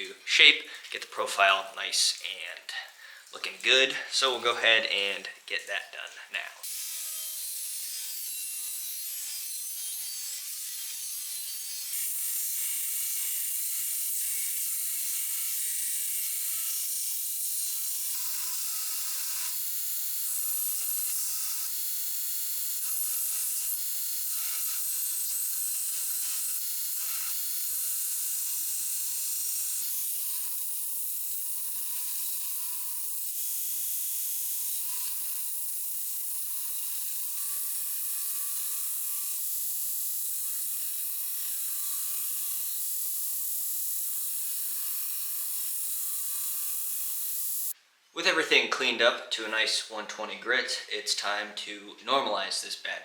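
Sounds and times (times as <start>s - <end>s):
power grinder grinding steel: 6.6s - 47.8s.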